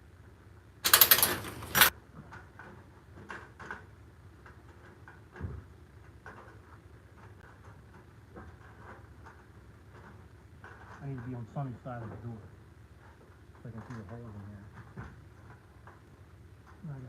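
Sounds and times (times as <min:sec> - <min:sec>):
dull thump of metal parts: 0:00.8 - 0:01.9
light clicks of metal parts: 0:00.8 - 0:17.0.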